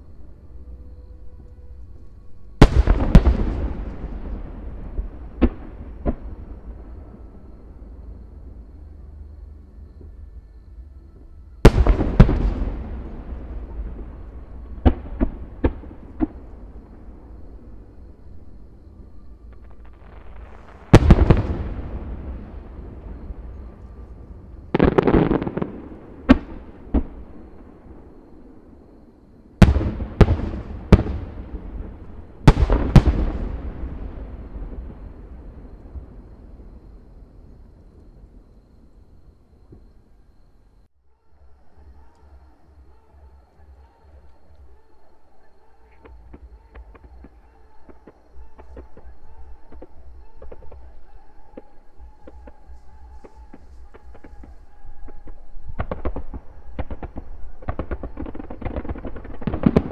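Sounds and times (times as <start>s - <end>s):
firework rumble and crackle: 2.5s - 9.0s, 11.6s - 40.1s, 43.8s - 59.9s
firework bangs: 2.6s - 7.0s, 11.6s - 17.1s, 19.6s - 28.4s, 29.6s - 36.9s, 45.9s - 59.9s.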